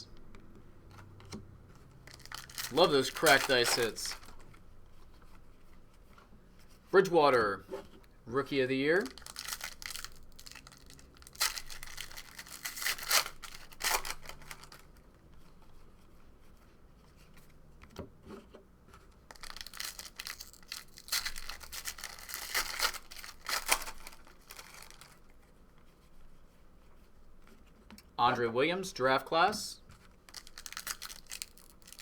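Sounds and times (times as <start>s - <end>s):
wrappers torn and crinkled: 2.0s - 4.4s, 8.9s - 15.0s, 19.2s - 25.2s, 30.2s - 32.0s.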